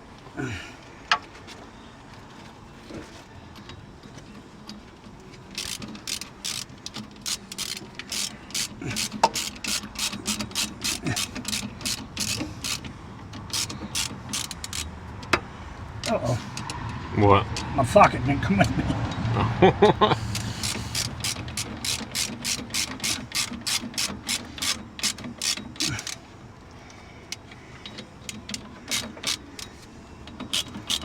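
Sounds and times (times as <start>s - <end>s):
socket ratchet clicking: 5.5s - 15.4s, 20.3s - 26.2s, 28.3s - 29.7s, 30.3s - 31.0s.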